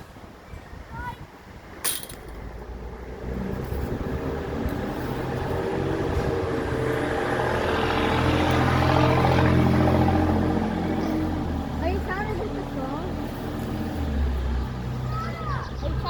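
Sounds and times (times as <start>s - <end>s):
vehicle engine humming: 2.1s - 16.0s.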